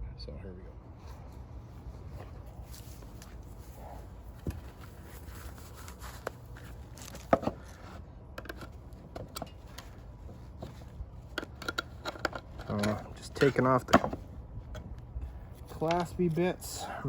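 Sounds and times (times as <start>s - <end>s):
low steady hum: 0.0s - 17.0s
clicks and taps handling wooden box: 8.3s - 16.2s.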